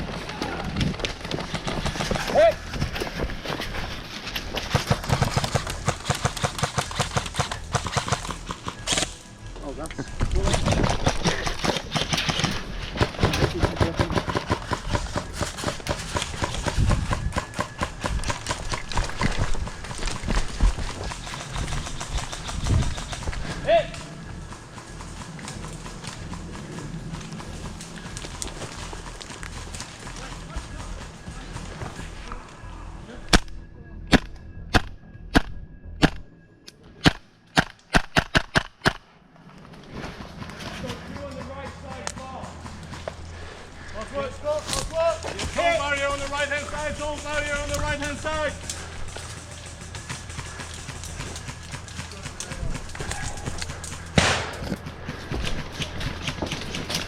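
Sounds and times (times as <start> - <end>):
footsteps running: 12.5 - 32.4, 39.8 - 57.0
airsoft gun shots: 37.0 - 39.0, 54.1 - 54.8.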